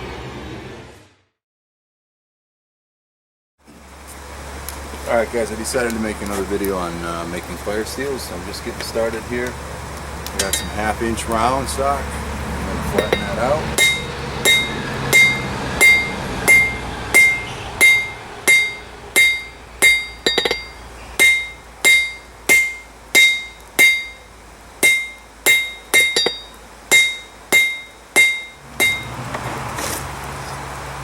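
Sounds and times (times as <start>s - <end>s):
hammer striking anvil: 13.0s - 29.2s.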